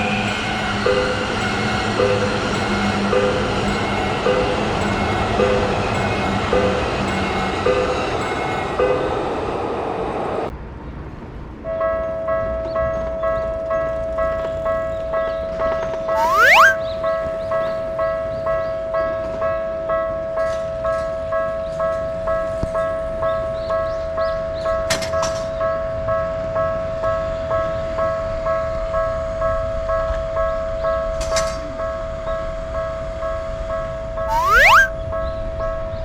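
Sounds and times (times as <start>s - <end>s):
steady tone: 16.2s - 16.8s, 34.3s - 34.9s.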